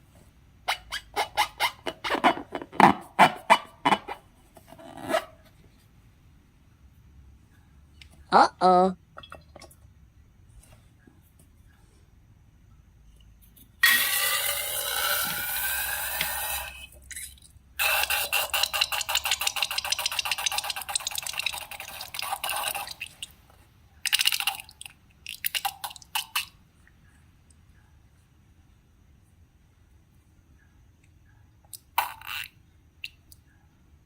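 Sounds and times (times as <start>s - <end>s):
air squealing from balloon: 13.8s - 17.0s, 17.8s - 19.0s.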